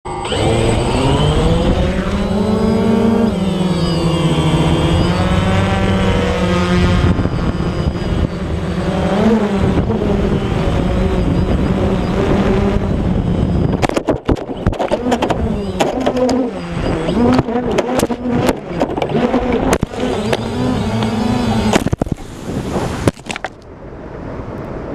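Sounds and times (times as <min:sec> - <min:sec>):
drone propellers whining: 0:00.1 - 0:23.6
drone striking tree branches: 0:11.5 - 0:23.7.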